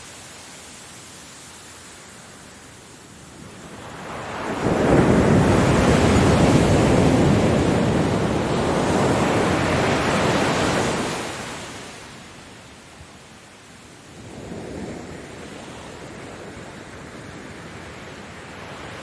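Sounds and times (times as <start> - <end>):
ocean waves breaking: 0.0 - 12.6.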